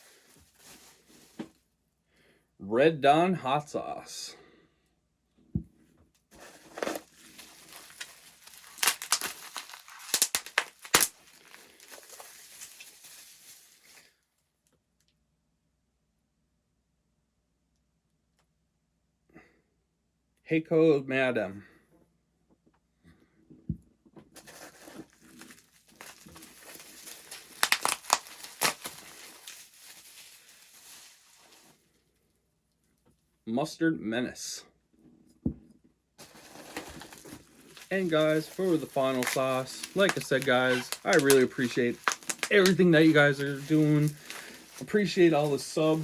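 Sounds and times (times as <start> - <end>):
packaging crinkling and rustling: 0.0 - 1.6, 6.3 - 14.2, 24.4 - 31.8, 36.2 - 46.0.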